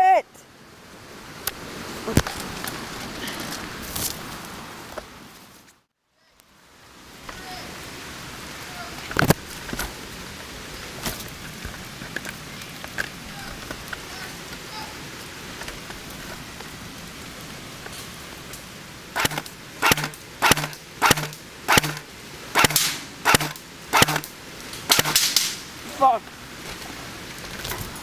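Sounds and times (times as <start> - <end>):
airsoft gun shots: 19.2 - 24.3, 24.9 - 25.6.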